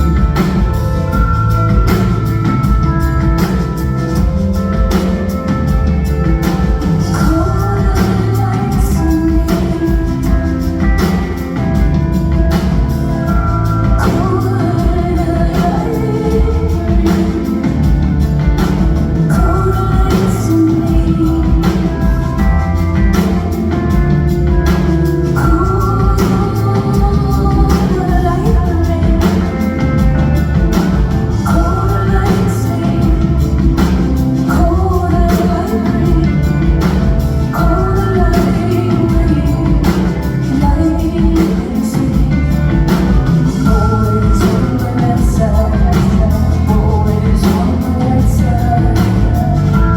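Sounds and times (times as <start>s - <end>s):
heavy bass: 0.0s - 49.9s
rock band playing: 0.0s - 49.9s
steady drum beat: 0.0s - 49.9s
woman singing: 0.0s - 49.9s.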